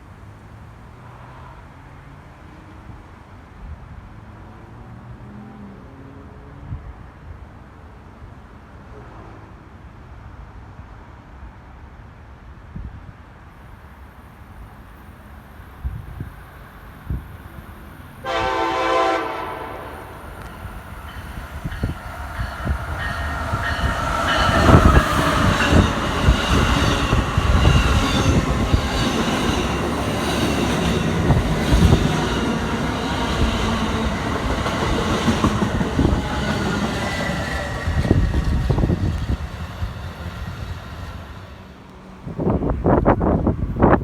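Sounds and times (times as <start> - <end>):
train wheels rushing on rails: 13.6 - 44.0.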